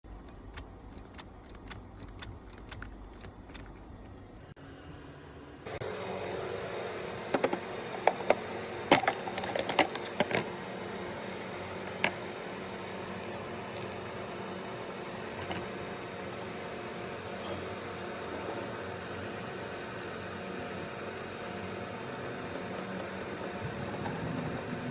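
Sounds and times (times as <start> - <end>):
sharp clicks: 0.0 - 4.2
steady mechanical hum: 0.0 - 24.9.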